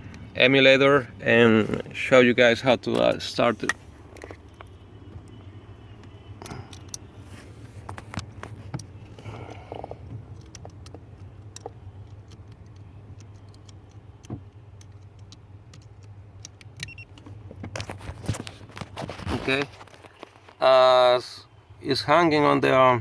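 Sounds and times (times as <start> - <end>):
connector clicks and rattles: 2.8 - 7.1, 7.9 - 19.0.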